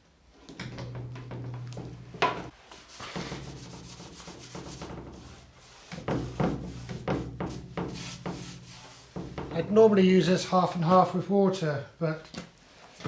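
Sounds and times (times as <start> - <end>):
low hum: 0.6 - 2.5
rubbing on steel: 0.8 - 9.9.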